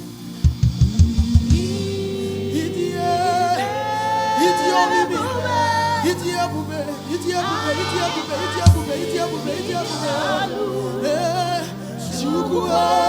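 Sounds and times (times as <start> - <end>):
gospel choir and band: 0.0 - 13.0
singer holding long notes: 1.3 - 13.0
low drum hits: 8.7 - 9.0.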